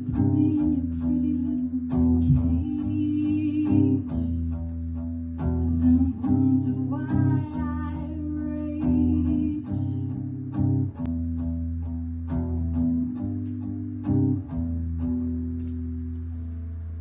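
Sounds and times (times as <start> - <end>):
person singing: 0.0 - 4.5, 5.6 - 10.2.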